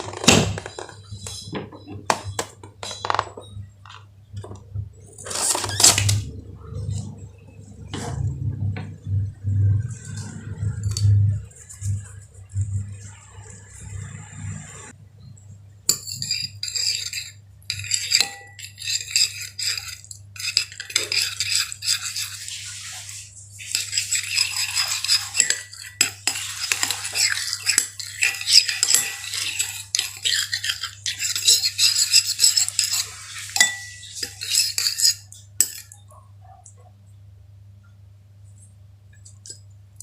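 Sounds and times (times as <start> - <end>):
utensil scraping bowl stirring slime: 9.8 - 15.0, 15.9 - 36.2.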